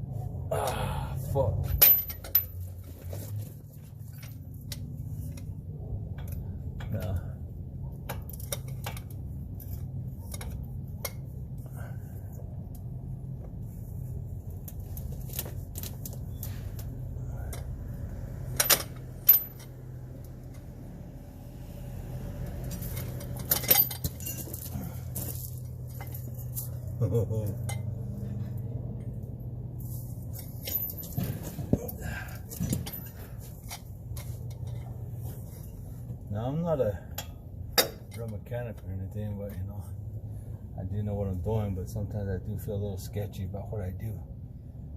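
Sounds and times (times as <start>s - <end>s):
low hum: 0.0s - 39.2s
metal tools clinking: 1.6s - 5.5s, 18.4s - 20.7s, 22.6s - 29.2s, 30.2s - 36.0s.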